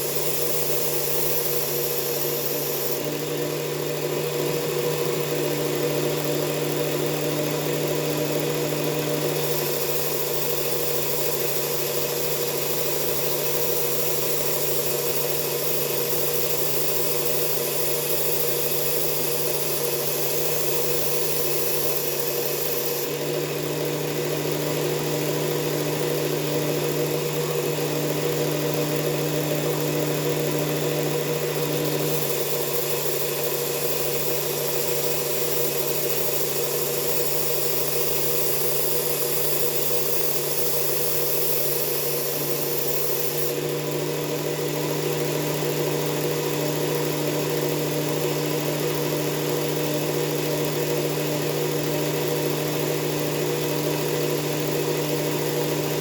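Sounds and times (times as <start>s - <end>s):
belt sander motor hum: 0.0s - 56.0s
blade grinding on sanding belt: 32.0s - 43.6s.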